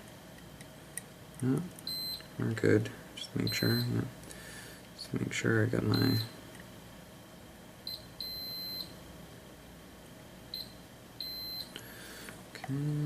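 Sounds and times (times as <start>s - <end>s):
multimeter high beeps: 1.9s - 2.3s, 3.5s - 4.0s, 5.9s - 6.4s, 7.9s - 8.9s, 10.5s - 11.7s.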